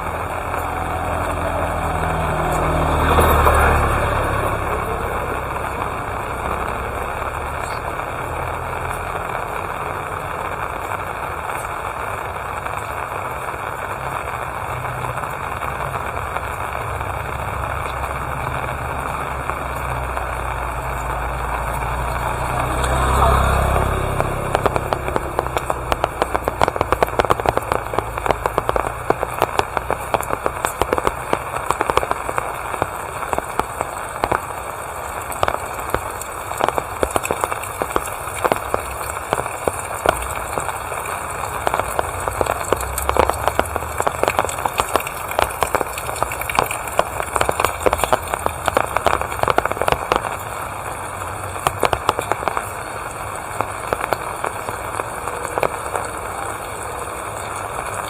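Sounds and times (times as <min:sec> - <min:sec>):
low rumble: 0:00.0 - 0:08.7
rain pattering: 0:00.0 - 0:58.0.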